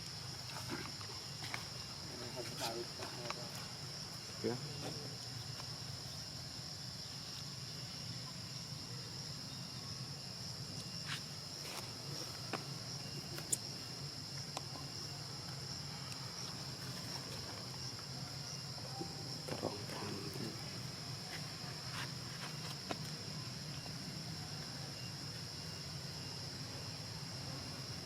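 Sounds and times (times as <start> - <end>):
insects droning: 0.0 - 28.0.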